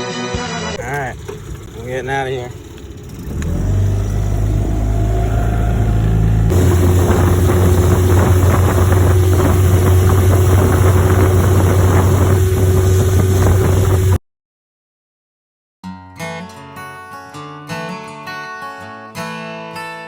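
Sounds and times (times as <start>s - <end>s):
outboard motor running: 0.8s - 14.2s
wind: 0.8s - 14.2s
water noise: 1.1s - 14.2s.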